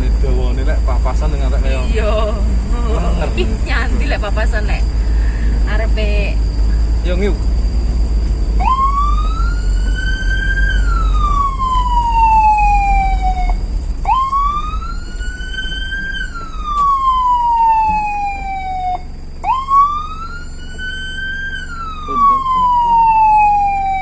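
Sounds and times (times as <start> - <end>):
low rumble: 0.0 - 24.0
vehicle siren wailing: 8.5 - 24.0.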